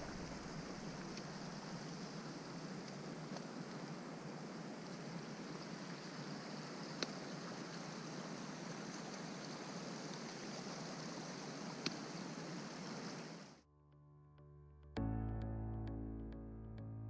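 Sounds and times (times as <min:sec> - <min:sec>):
running water rushing: 0:00.0 - 0:13.6.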